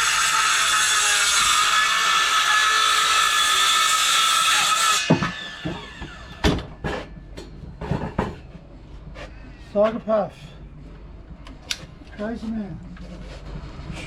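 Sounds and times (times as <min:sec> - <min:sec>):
knocks and clatters: 0:05.1 - 0:08.6.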